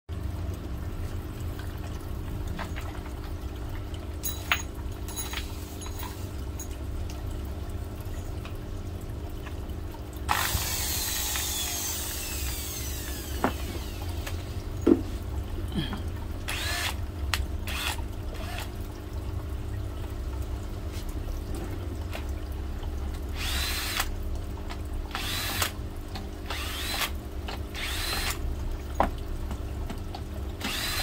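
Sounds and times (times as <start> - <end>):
electric drill motor whine: 10.3 - 14.0, 16.5 - 17.0, 17.7 - 18.7, 23.4 - 24.1, 25.1 - 25.7, 26.5 - 27.1, 27.8 - 28.4, 30.6 - 31.0.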